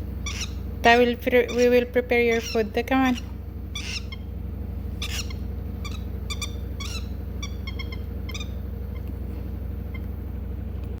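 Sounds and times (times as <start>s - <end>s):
steady low hum: 0.0s - 11.0s
lovebird chirping: 0.2s - 4.3s, 4.9s - 9.2s.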